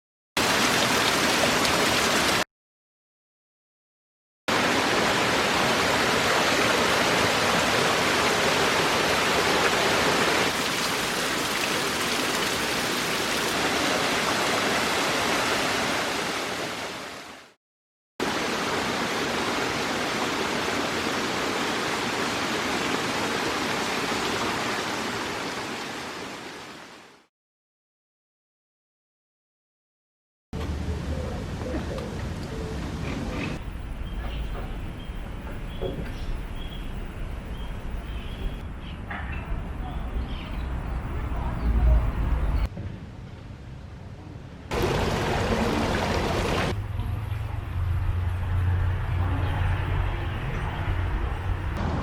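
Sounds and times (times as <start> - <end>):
rush of flowing water: 0.4 - 2.5, 4.5 - 17.6, 18.2 - 27.3, 44.7 - 47.7.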